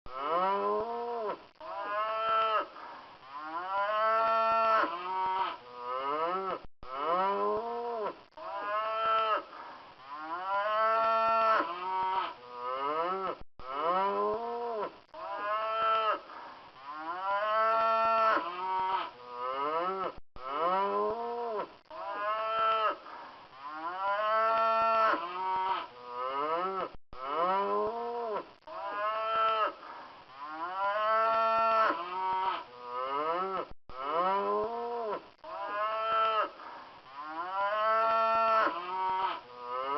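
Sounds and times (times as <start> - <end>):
cattle mooing: 3.4 - 9.5, 10.1 - 16.2, 16.9 - 23.0, 23.7 - 29.8, 37.2 - 39.9.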